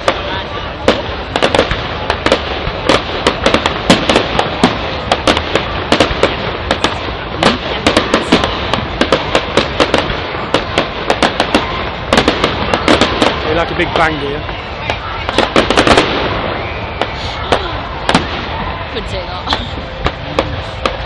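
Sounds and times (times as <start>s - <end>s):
fireworks cracks and bangs: 0.0s - 21.0s.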